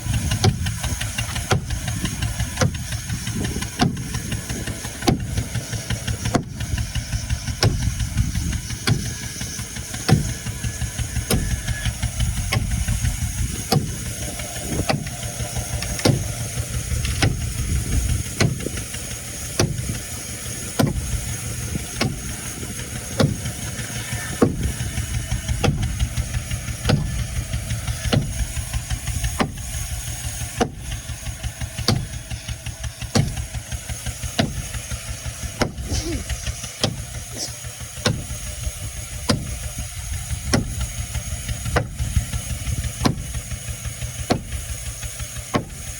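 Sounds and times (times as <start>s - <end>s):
motor running steadily: 0.0s - 45.9s
sharp knocks: 33.1s - 33.4s.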